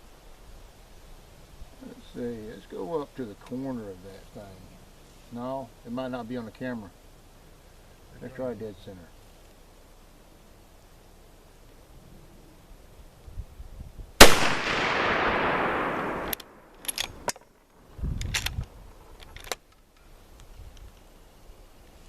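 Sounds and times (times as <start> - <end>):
rifle shot with echo: 14.2 - 17.3
rifle bolt clicking: 14.2 - 17.4.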